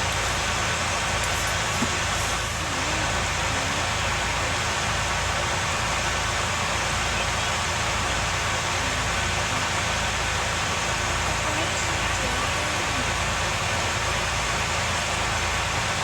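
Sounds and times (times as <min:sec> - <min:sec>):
vehicle engine rumble with hiss: 0:00.0 - 0:16.0.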